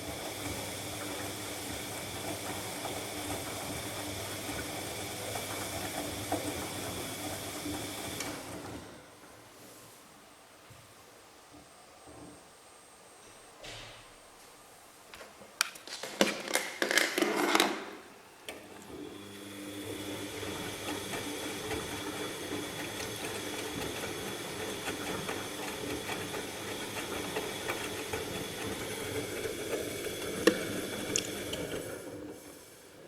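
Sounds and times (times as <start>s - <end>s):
washing machine motor humming: 0.0s - 9.5s, 18.1s - 33.0s.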